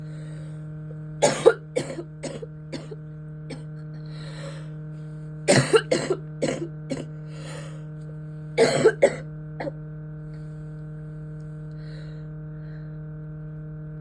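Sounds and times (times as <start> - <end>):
person coughing: 1.2 - 3.8, 5.5 - 7.7, 8.6 - 9.8
person drawing breath: 4.1 - 5.1, 7.3 - 7.9.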